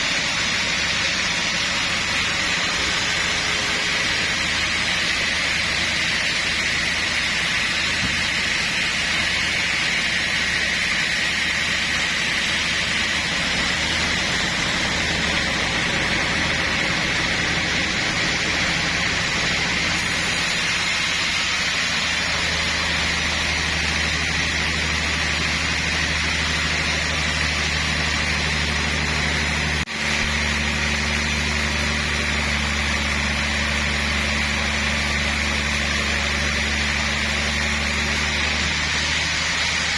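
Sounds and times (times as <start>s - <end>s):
sawmill machinery whine: 0.0s - 39.9s.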